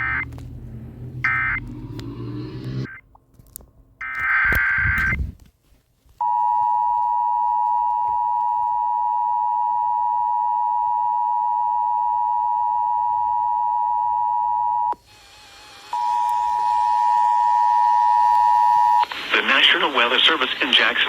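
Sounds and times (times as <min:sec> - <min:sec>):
steady alarm tone: 0:00.0 - 0:03.0, 0:15.9 - 0:19.0.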